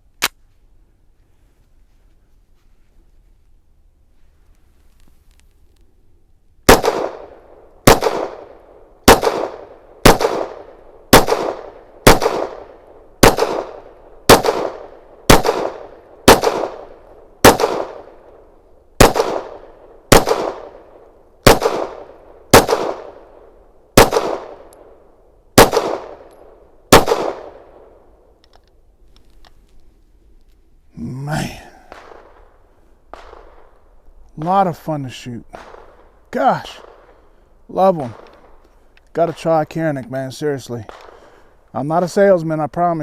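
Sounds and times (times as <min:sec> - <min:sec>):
pistol shots with echo: 0:06.7 - 0:28.1, 0:31.7 - 0:33.8, 0:34.4 - 0:37.2, 0:40.8 - 0:41.3.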